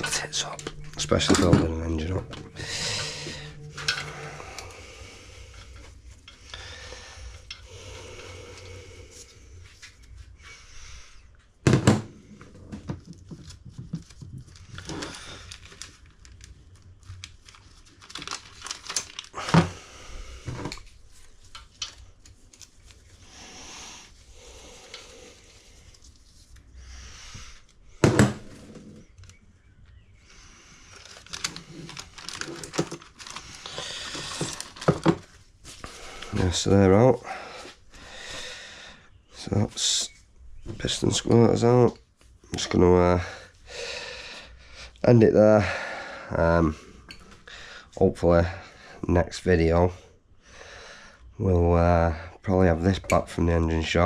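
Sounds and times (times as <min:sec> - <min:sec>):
tools rustling and scraping: 0:00.0 - 0:10.1, 0:20.4 - 0:23.2, 0:30.9 - 0:36.5.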